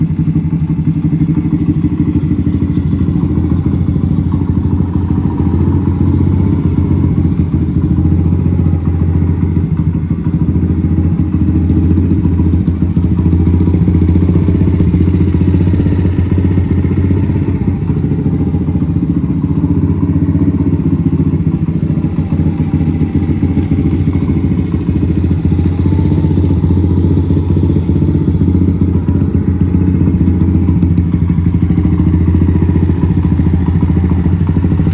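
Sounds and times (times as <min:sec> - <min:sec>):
small motorcycle engine idling: 0:00.0 - 0:34.9.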